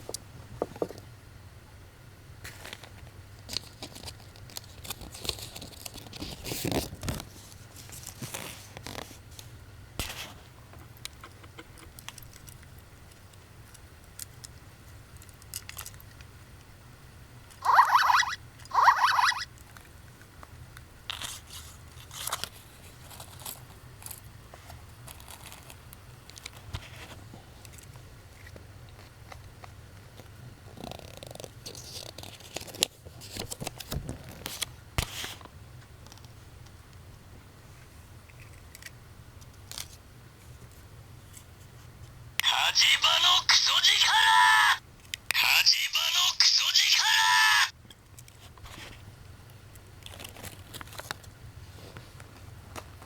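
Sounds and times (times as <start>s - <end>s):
plastic toys clicking and rustling: 11.0s - 16.3s
toy speaker sounds: 17.6s - 19.5s, 42.4s - 47.7s.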